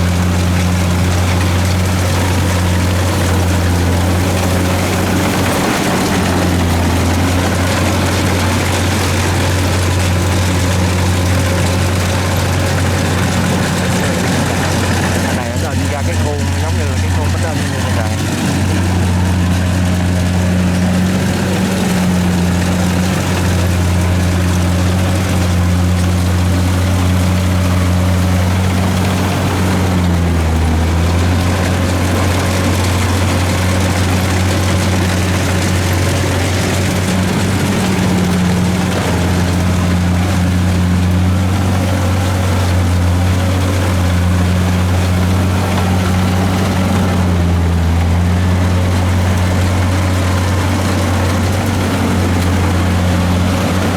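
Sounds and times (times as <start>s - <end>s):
combine harvester diesel engine running: 0.0s - 53.9s.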